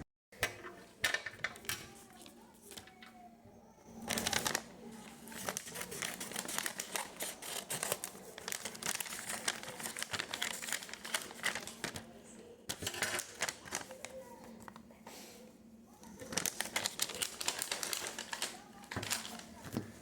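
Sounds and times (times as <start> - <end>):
packaging crinkling and rustling: 4.0 - 14.8, 16.0 - 20.0.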